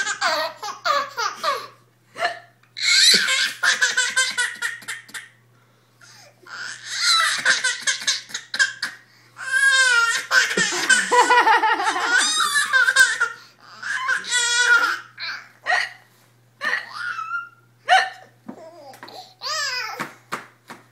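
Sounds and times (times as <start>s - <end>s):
child laughing: 6.8s - 8.9s, 9.7s - 15.9s
person hiccuping: 15.7s - 16.0s, 17.9s - 18.4s.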